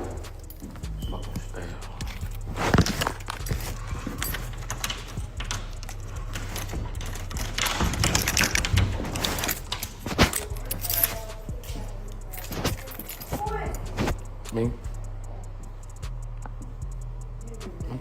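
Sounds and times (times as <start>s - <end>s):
rustling: 0.0s - 14.5s
steady low hum: 0.0s - 18.0s.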